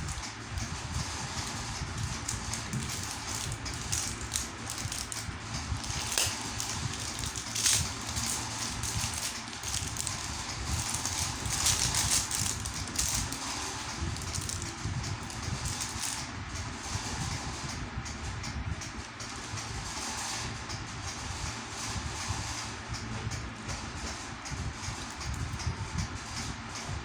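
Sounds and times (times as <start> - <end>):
handling clicks and rustling: 0.0 - 16.3, 24.8 - 25.7
low steady rumble: 0.0 - 19.0.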